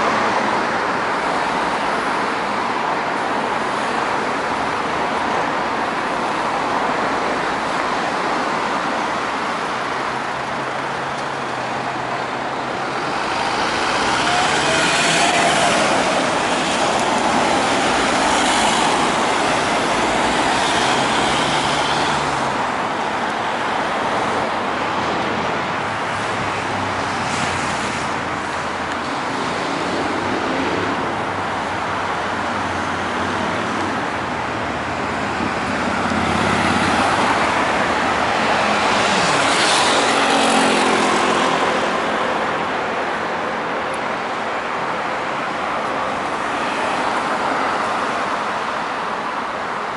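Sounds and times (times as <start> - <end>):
road traffic passing: 0.0 - 49.9.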